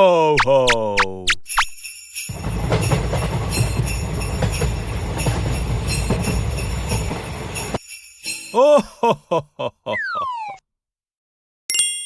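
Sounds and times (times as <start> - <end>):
jingle bells shaking: 1.5 - 8.6.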